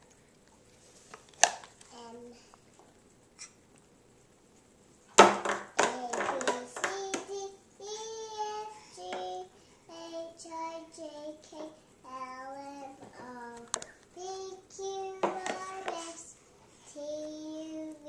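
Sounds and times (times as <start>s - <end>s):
loud slaps or knocks: 5.2s - 7.3s
child singing in a high voice: 5.8s - 18.0s.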